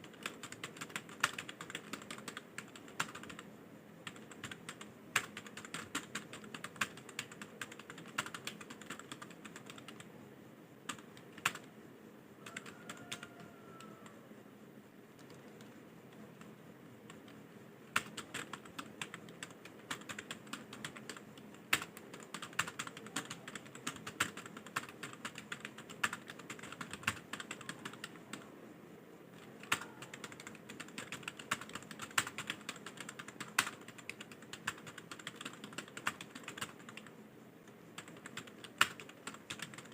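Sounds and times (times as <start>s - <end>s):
fast keyboard typing: 0.0s - 10.1s, 10.9s - 11.7s, 12.4s - 14.2s, 15.2s - 28.5s, 29.3s - 39.9s.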